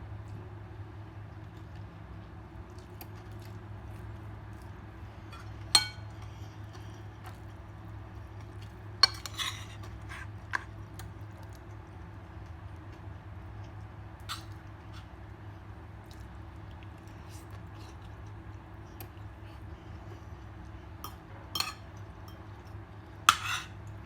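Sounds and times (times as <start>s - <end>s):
dishes clinking: 5.3s - 6.2s, 21.0s - 22.4s.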